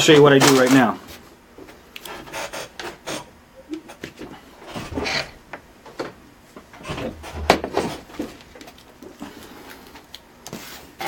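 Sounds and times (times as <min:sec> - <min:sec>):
parts scraping on work surface: 0:06.8 - 0:08.5.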